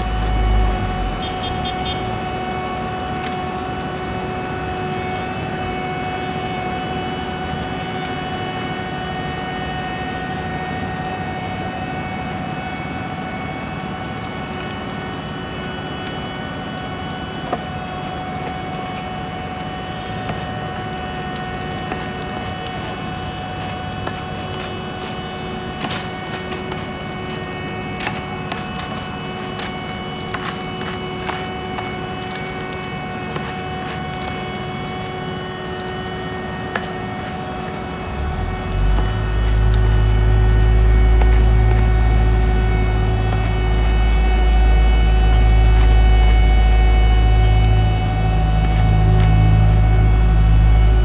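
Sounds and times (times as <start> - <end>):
deep rumble: 0.0 - 2.7, 38.0 - 51.0
whining tones: 0.0 - 6.8, 15.2 - 51.0
construction machinery engine hum: 0.0 - 8.3, 15.2 - 51.0.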